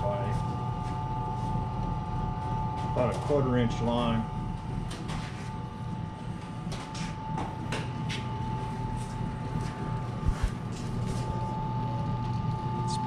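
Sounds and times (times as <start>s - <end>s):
riveting machine humming: 0.0s - 13.0s.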